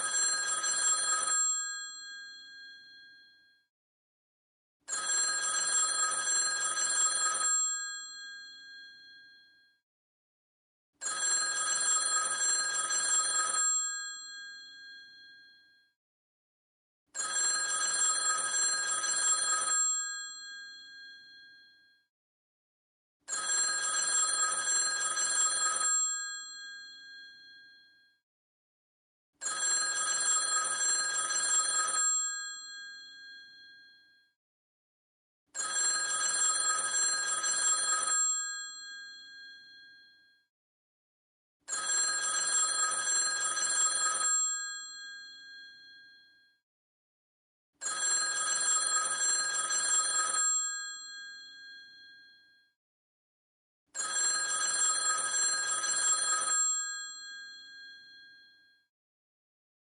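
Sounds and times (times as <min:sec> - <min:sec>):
telephone bell ringing: 0:00.0 - 0:03.5, 0:04.9 - 0:09.7, 0:11.0 - 0:15.9, 0:17.2 - 0:21.9, 0:23.3 - 0:28.1, 0:29.4 - 0:34.2, 0:35.6 - 0:40.3, 0:41.7 - 0:46.6, 0:47.8 - 0:52.6, 0:54.0 - 0:58.9.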